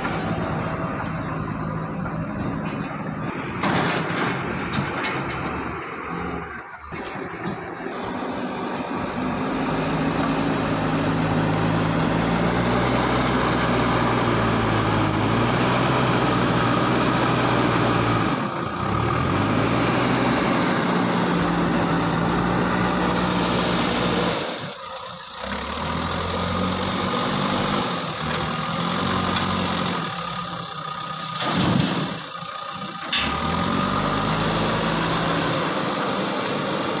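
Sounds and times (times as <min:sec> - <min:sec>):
diesel engine running: 0:00.0 - 0:37.0.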